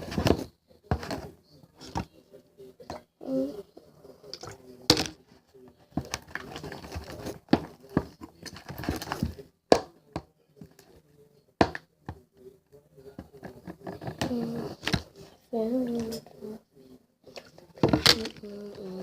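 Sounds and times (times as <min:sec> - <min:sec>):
utensil scraping a container: 0:06.0 - 0:09.4.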